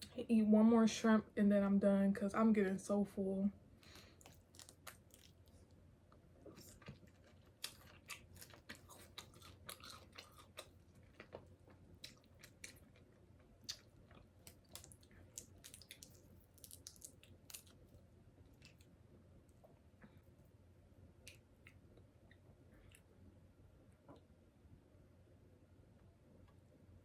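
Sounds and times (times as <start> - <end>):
mouth chewing wet clicks: 13.6 - 17.8.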